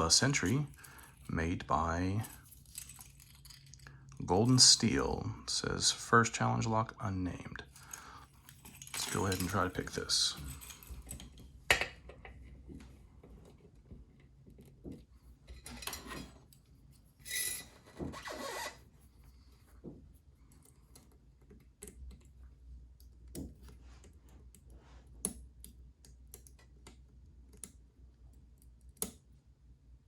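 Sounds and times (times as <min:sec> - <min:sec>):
long scraping in lock: 0:17.2 - 0:18.8.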